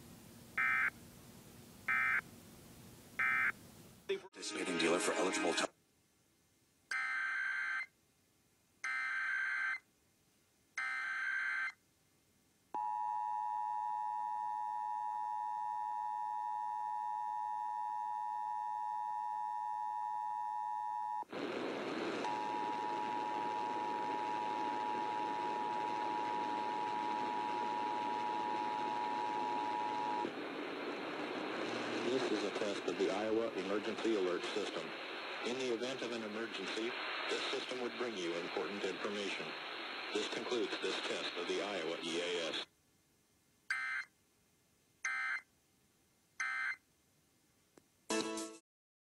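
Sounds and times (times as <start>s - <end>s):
recording hiss: 21.3s - 43.7s.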